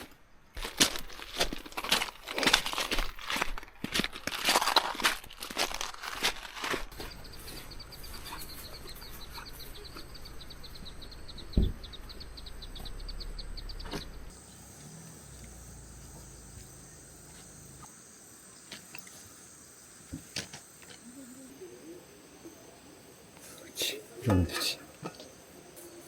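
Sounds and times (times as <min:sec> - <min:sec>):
insects chirping: 0:00.5 - 0:26.0
high insect trill: 0:14.3 - 0:26.0.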